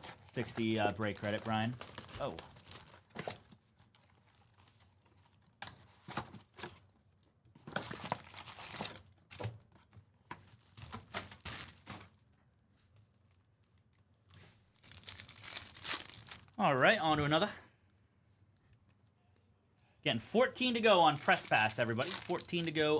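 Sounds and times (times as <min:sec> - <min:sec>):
foil wrappers tearing and crinkling: 0:00.0 - 0:04.8, 0:07.8 - 0:09.0, 0:10.7 - 0:12.1, 0:14.7 - 0:16.6, 0:21.0 - 0:22.9.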